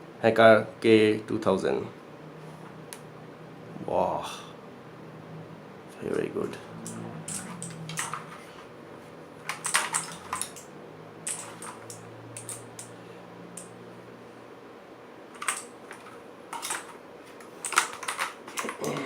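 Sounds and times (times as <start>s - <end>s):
mechanical keyboard typing: 6.8s - 8.4s, 9.5s - 10.7s, 11.3s - 12.7s, 15.4s - 16.9s, 17.6s - 19.0s.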